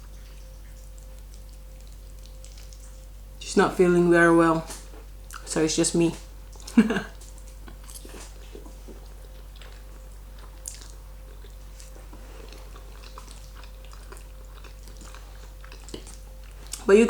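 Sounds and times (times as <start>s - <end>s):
chewing mouth sounds: 0.0s - 3.0s, 6.5s - 16.9s
low hum: 0.0s - 17.0s.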